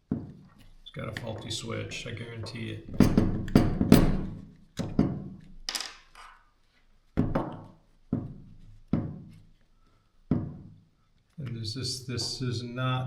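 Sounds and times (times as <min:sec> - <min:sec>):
knocks on plastic parts: 0:02.4 - 0:06.1.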